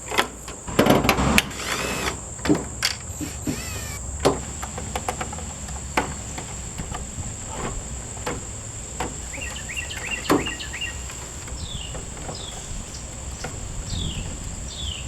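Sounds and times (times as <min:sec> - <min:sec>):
sharp clicks and knocks: 0:02.5 - 0:07.0
bird chirping: 0:03.2 - 0:04.0, 0:09.3 - 0:15.0
high-pitched insect drone: 0:03.2 - 0:04.0.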